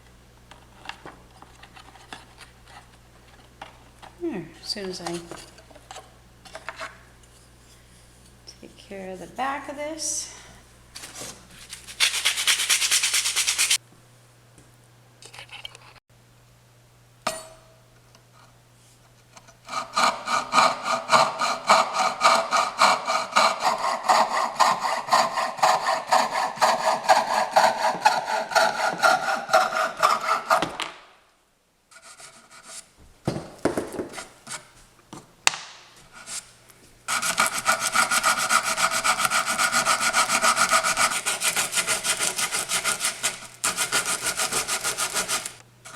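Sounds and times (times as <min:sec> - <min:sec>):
coping saw cutting wood: 0:19.6 - 0:30.8, 0:37.1 - 0:45.9.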